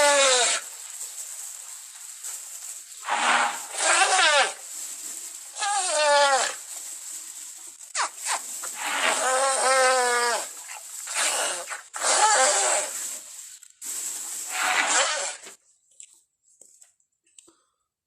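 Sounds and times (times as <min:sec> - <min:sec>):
elephant calls: 0:03.0 - 0:04.6, 0:08.8 - 0:13.0, 0:14.5 - 0:15.5.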